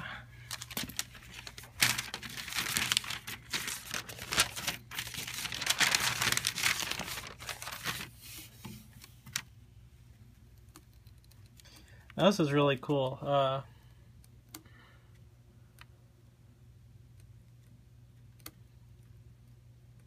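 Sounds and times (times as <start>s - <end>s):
paper crinkling and rustling: 0.4s - 9.5s.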